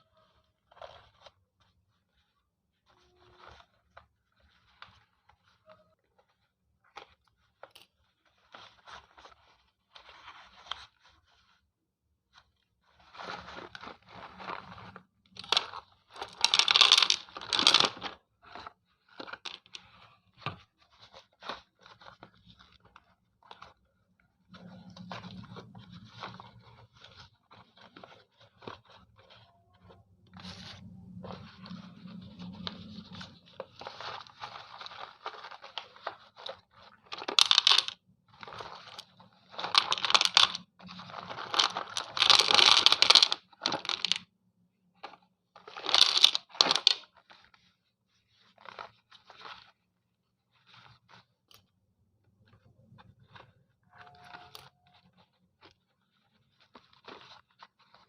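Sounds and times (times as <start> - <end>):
pencils crunched between teeth: 15.3 - 19.9, 32.0 - 44.2, 45.6 - 47.0.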